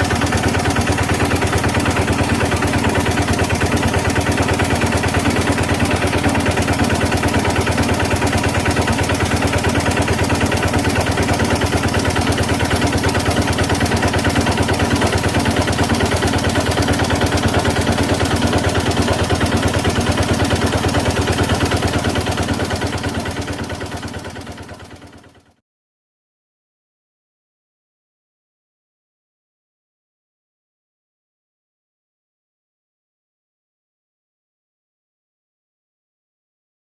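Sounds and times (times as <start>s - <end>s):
engine idling: 0.0s - 25.6s.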